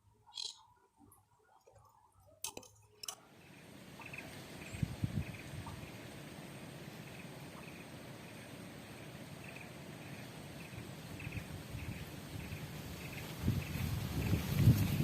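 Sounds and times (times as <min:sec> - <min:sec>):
small animal chirping: 0:00.3 - 0:00.7.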